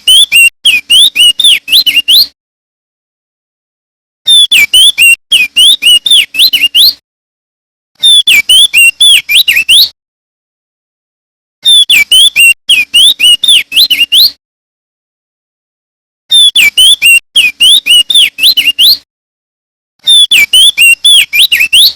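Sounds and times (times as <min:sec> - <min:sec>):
bird singing whistled notes: 0:00.0 - 0:02.4, 0:04.3 - 0:07.0, 0:08.0 - 0:10.0, 0:11.6 - 0:14.4, 0:16.3 - 0:19.0, 0:20.0 - 0:21.9.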